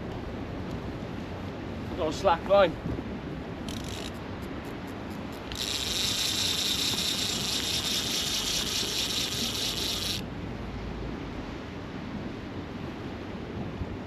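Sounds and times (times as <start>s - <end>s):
wind: 0.0s - 14.0s
fishing reel whirring: 3.6s - 4.2s, 5.3s - 10.2s
fishing reel ticks: 3.7s - 4.2s, 5.3s - 10.2s.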